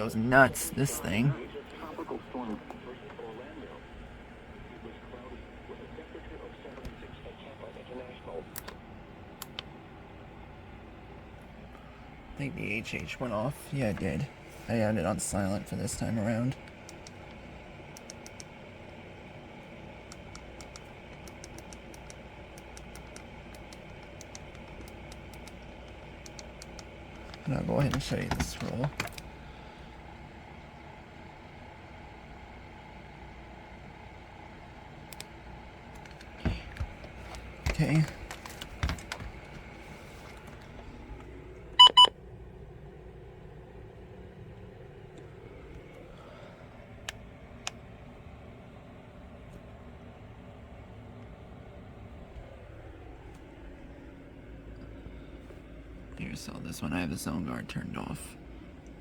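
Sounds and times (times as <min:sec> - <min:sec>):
faint steady background hum: 0:00.0 - 0:59.0
short electronic beeps: 0:41.8 - 0:42.1.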